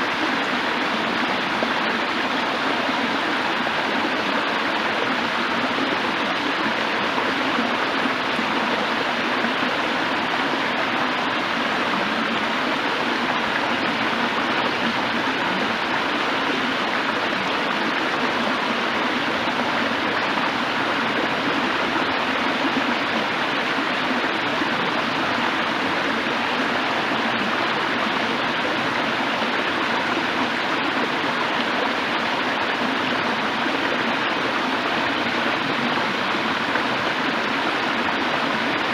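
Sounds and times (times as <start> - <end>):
water rushing over rocks: 0.0 - 38.9.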